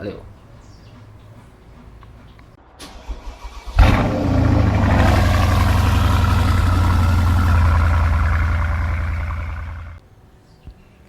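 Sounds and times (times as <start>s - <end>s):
car low drone with hiss: 3.4s - 10.0s.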